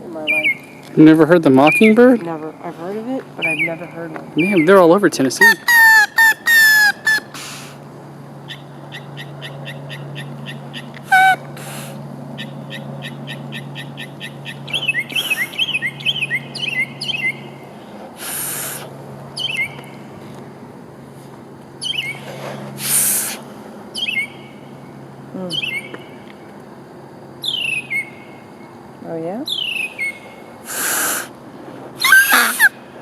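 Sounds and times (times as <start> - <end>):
mockingbird singing: 0.2 - 2.2, 3.4 - 7.4, 8.4 - 11.6, 12.4 - 17.6, 19.4 - 19.9, 21.8 - 22.2, 23.9 - 24.6, 25.3 - 26.2, 27.4 - 28.4, 29.4 - 31.3, 32.0 - 32.8
hissing bursts: 7.1 - 7.8, 11.1 - 12.0, 18.2 - 18.9, 22.4 - 23.5, 30.6 - 31.4.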